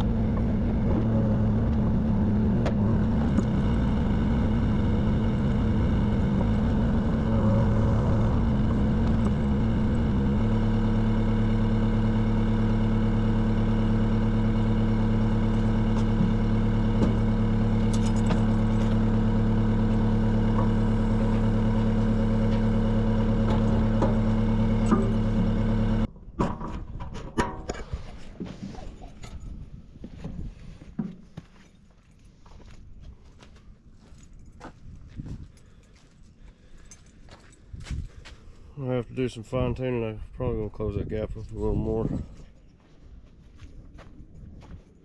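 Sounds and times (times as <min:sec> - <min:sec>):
engine idling: 0:00.0 - 0:26.1.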